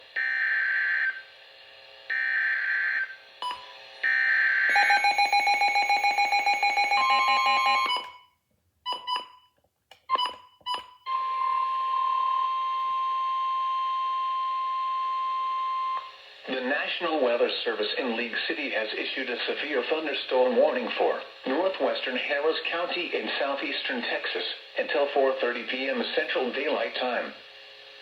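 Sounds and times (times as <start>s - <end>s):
rhythmic electronic chime pattern: 4.7s - 8.1s
steady alert tone: 4.7s - 8.1s.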